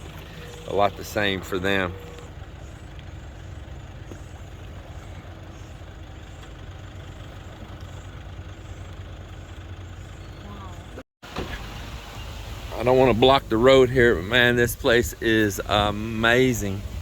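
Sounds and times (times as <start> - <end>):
pickup engine running: 0.0 - 17.0.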